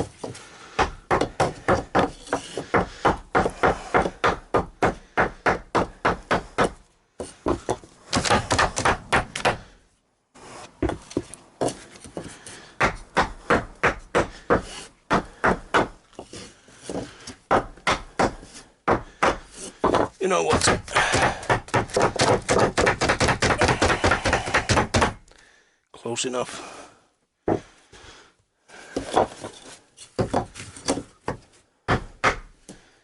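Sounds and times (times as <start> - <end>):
hammer blows on particle board: 17.5 - 25.2.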